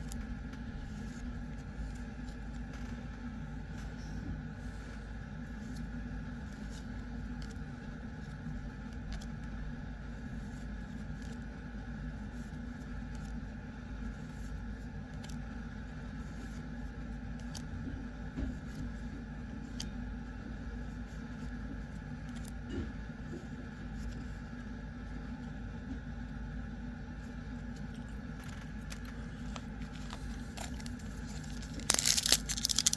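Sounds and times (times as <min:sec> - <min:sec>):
trading cards and wrappers rustling: 0:27.7 - 0:32.9.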